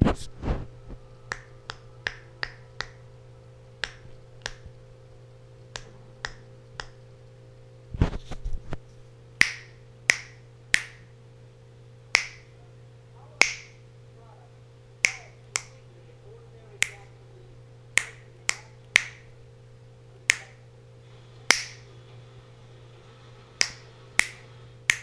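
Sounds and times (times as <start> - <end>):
fingers snapping: 1.3 - 3.0, 3.8 - 4.7, 5.7 - 7.0, 9.4 - 11.1, 12.1 - 12.5, 13.4 - 13.8, 15.0 - 15.8, 16.8 - 17.1, 18.0 - 19.3, 20.2 - 20.6, 21.5 - 21.9, 23.6 - 25.0.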